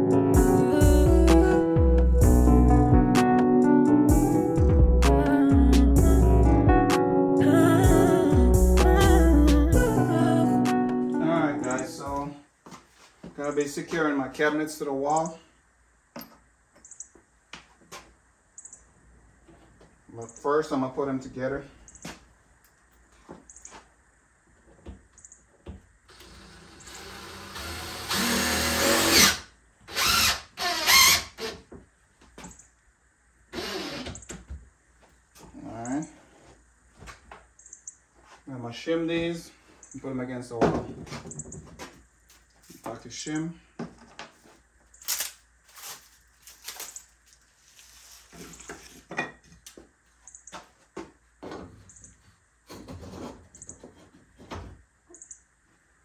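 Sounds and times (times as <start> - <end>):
power drill driving screws: 26.1 - 31.6, 33.5 - 34.2.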